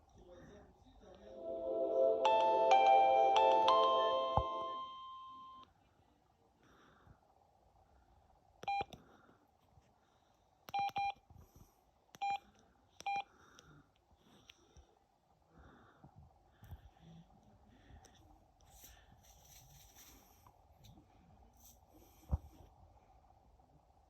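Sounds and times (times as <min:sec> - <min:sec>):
chiming polyphonic ringtone: 0:01.4 - 0:05.6
phone keypad beeps: 0:10.7 - 0:11.2, 0:13.0 - 0:13.2.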